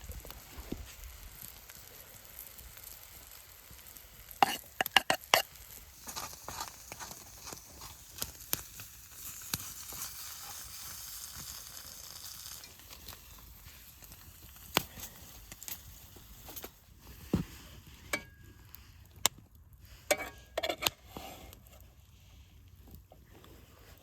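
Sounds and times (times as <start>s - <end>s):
food sizzling in a pan: 0.0s - 14.9s
pops and clicks: 4.4s - 8.7s.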